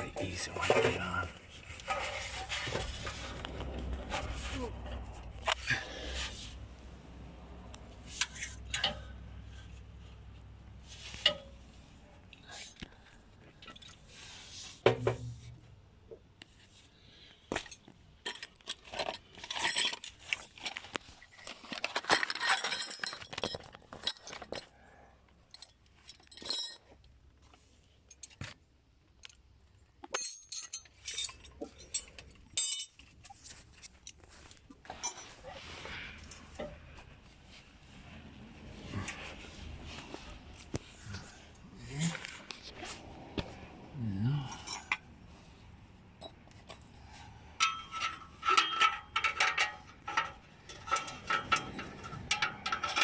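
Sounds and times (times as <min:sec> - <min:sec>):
small metal parts clinking: 0:17.5 - 0:24.7, 0:25.5 - 0:26.9, 0:30.0 - 0:34.2, 0:47.6 - 0:53.0.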